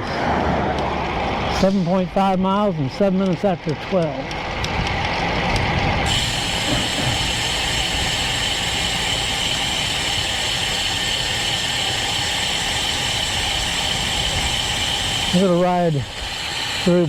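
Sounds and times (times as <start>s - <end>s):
wind and road noise: 0.0s - 17.0s
high hiss: 6.0s - 17.0s.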